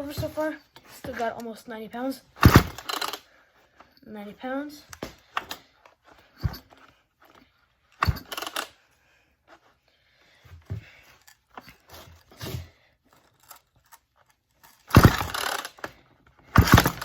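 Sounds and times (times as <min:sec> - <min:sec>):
rasping starter cord pulls: 0:02.4 - 0:03.3, 0:04.9 - 0:05.6, 0:08.0 - 0:08.8, 0:11.2 - 0:17.0.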